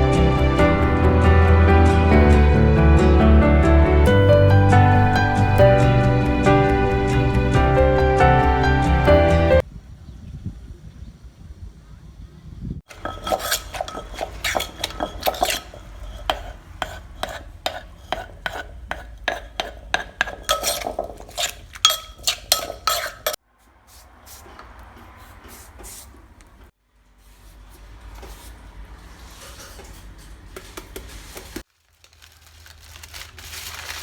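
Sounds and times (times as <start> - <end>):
utensils clinking against a pot: 12.9 - 23.4.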